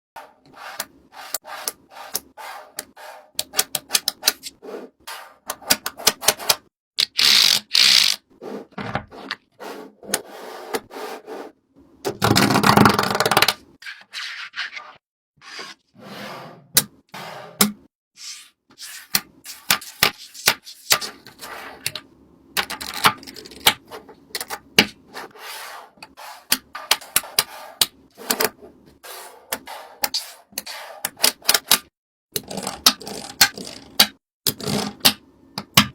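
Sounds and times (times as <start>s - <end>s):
rubbing and scraping: 0.2s - 6.6s, 25.0s - 31.5s
clicks and taps: 30.6s - 35.9s.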